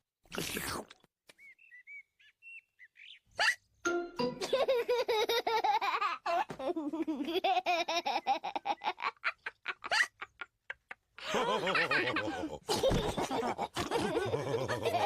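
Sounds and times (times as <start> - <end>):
cartoon pigs laughing: 4.4 - 15.0.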